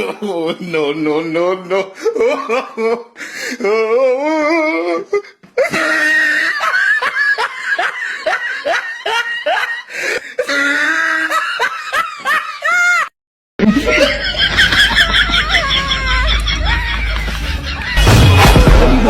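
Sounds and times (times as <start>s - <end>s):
person laughing: 4.6s - 19.0s.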